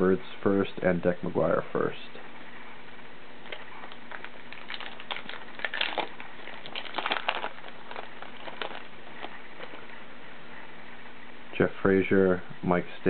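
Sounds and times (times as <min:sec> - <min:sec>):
foil wrapper crinkling: 0:03.5 - 0:09.9.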